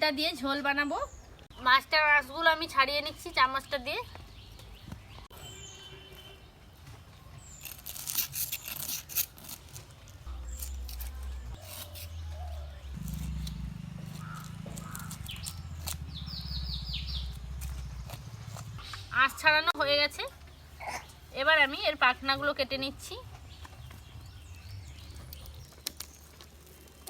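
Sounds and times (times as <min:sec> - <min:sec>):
birds chirping: 0:00.5 - 0:08.1, 0:09.8 - 0:27.0
metal spoon scraping fish scales: 0:07.6 - 0:09.8, 0:10.5 - 0:13.3
low hum: 0:10.3 - 0:19.7.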